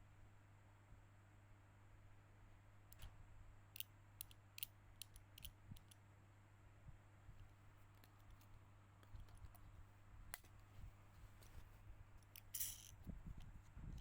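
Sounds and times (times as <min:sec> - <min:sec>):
low steady hum: 0:00.0 - 0:14.0
small parts and tools clicking: 0:03.7 - 0:06.0, 0:12.2 - 0:14.0.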